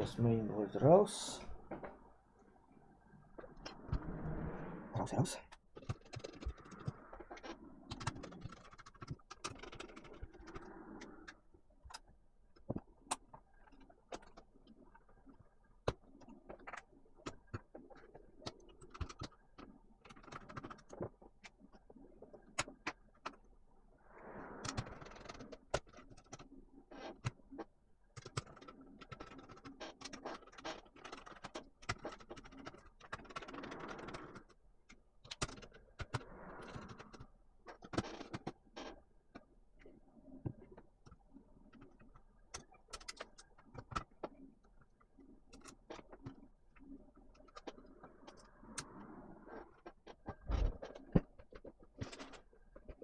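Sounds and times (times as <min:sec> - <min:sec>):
small clicks and taps: 0:05.8 - 0:23.5, 0:24.6 - 0:36.2, 0:36.8 - 0:48.9.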